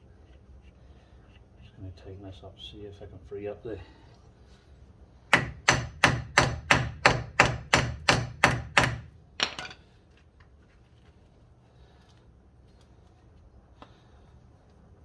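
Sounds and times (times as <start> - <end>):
hammer striking steel: 5.3 - 9.8.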